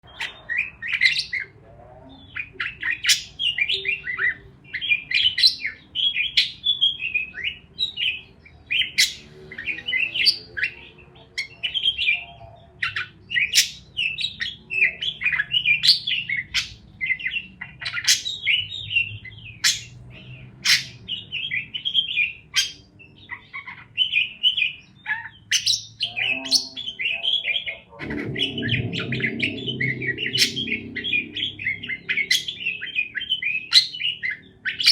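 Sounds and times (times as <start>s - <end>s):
parakeets chirping: 0.0s - 34.9s
low noise: 25.9s - 34.8s.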